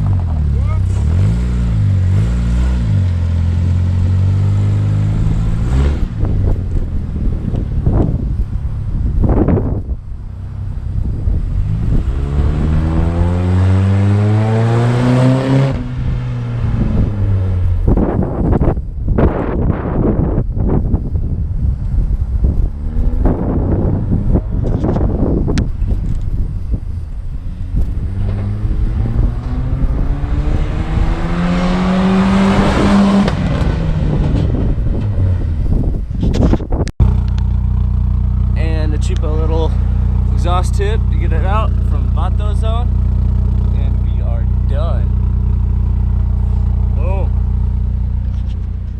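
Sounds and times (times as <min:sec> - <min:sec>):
pickup engine accelerating hard: 0:00.0 - 0:36.0
steady engine hum: 0:00.0 - 0:36.2, 0:37.0 - 0:48.9
wind rumble on microphone: 0:00.0 - 0:48.9.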